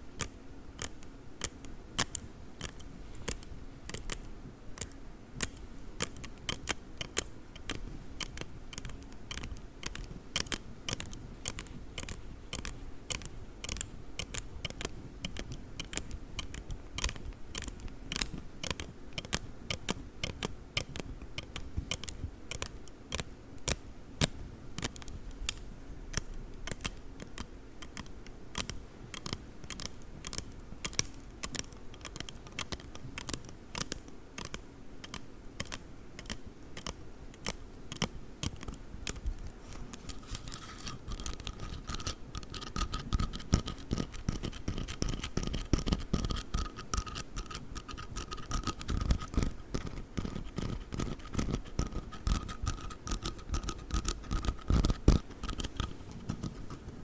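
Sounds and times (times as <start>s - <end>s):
folding ruler clicking and tapping: 26.2s - 57.0s.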